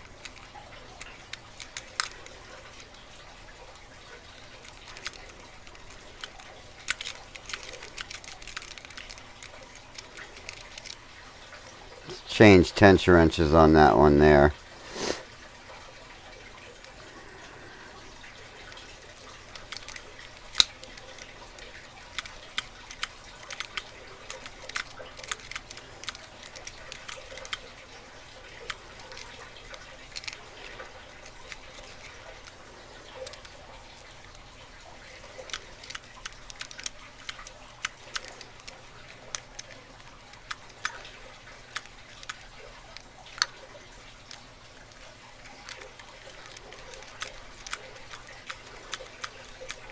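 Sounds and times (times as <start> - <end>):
lock pick clicks and scrapes: 4.4 - 11.0, 22.0 - 27.6
steady low hiss: 12.1 - 15.2.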